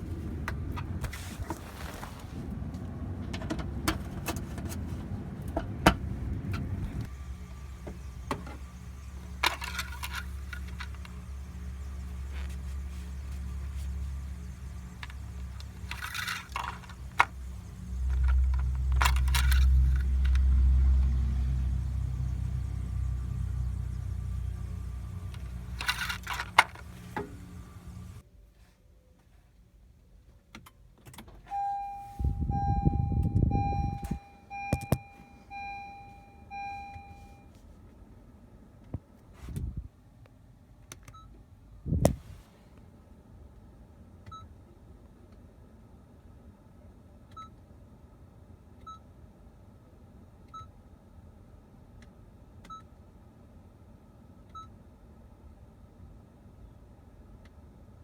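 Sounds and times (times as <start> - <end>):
car engine idling: 0.0 - 28.2
low rumble: 5.0 - 28.2, 31.8 - 37.4
keys rattling: 14.9 - 17.4
car warning chime beeping: 31.5 - 37.5.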